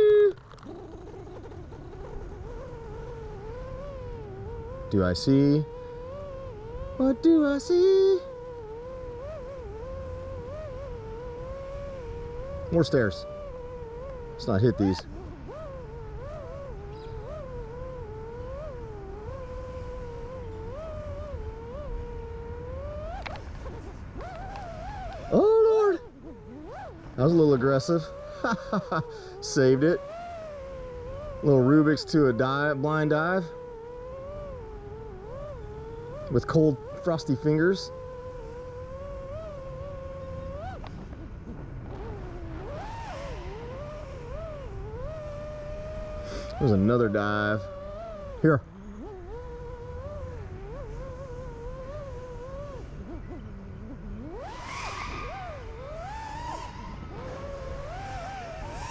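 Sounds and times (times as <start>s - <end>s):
quadcopter motors whining: 0.0s - 58.9s.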